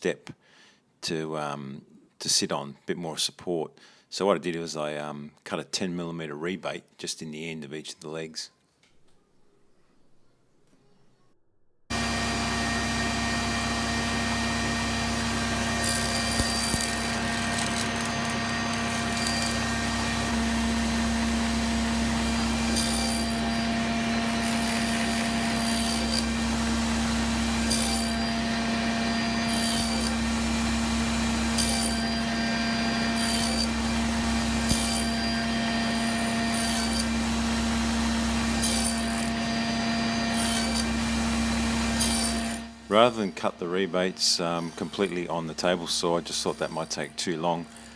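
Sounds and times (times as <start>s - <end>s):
table saw cutting wood: 11.9s - 47.9s.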